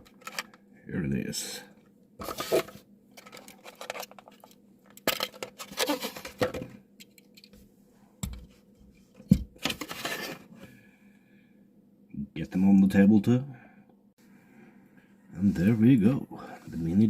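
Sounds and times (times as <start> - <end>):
packaging clicking and scraping: 0.0 - 0.6, 2.2 - 7.5, 9.6 - 10.5.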